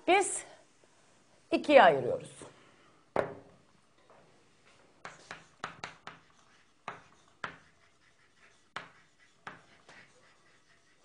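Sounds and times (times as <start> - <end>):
pen tapping and scratching: 5.0 - 11.0.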